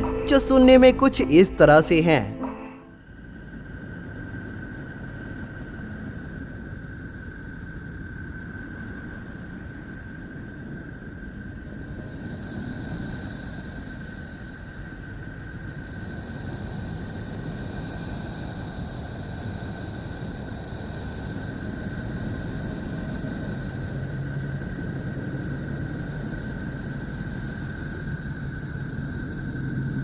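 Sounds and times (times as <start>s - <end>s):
noisy drone: 0.0s - 2.9s
thin high tones: 0.0s - 2.9s.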